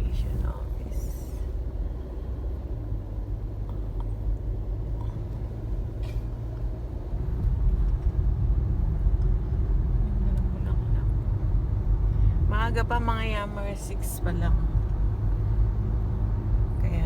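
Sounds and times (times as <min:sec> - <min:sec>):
car engine rumbling: 0:00.0 - 0:17.0.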